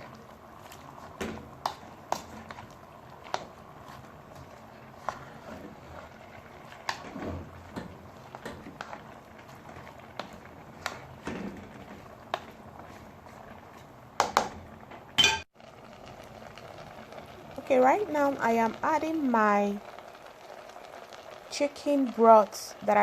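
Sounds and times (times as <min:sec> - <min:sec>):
spoon stirring thick porridge: 0:00.0 - 0:14.5
spoon knocking against pot: 0:15.2 - 0:15.5.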